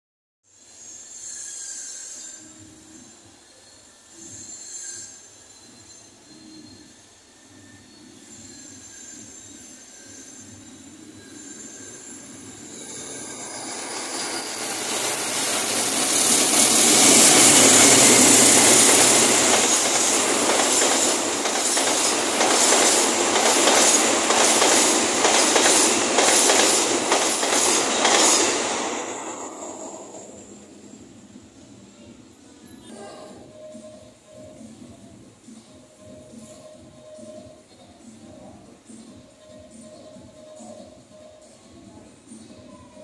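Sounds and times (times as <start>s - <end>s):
train passing at speed: 8.7s - 32.4s
wheels clicking over rail joints: 11.8s - 29.4s.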